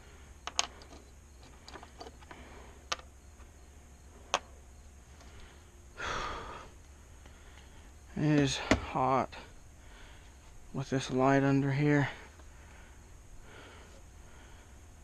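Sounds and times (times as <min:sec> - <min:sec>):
steady low hum: 0:00.0 - 0:15.0
tools and parts clicking: 0:00.4 - 0:03.1
breathy sigh: 0:06.0 - 0:06.7.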